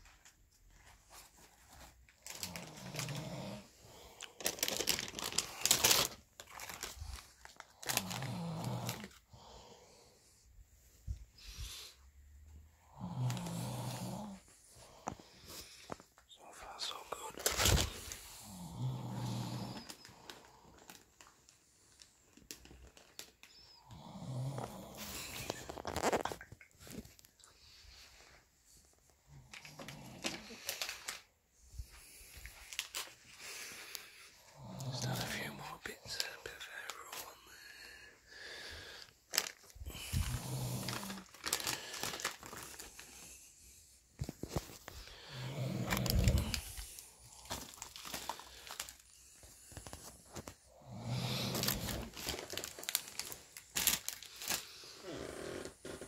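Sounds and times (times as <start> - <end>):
rustling and crinkling: 0.0 - 9.3, 17.1 - 37.5, 39.0 - 56.0
man snoring softly: 2.3 - 4.2, 7.8 - 10.2, 12.7 - 15.8, 16.4 - 20.2, 23.5 - 25.6, 29.2 - 30.7, 34.3 - 38.9, 39.8 - 41.8, 45.0 - 47.8, 50.6 - 52.3, 54.8 - 56.0.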